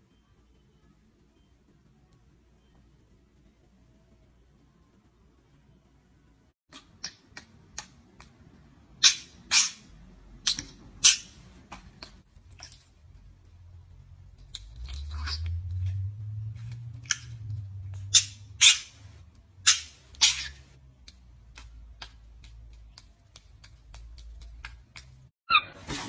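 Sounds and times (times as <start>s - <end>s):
low hum: 12.2s - 22.4s.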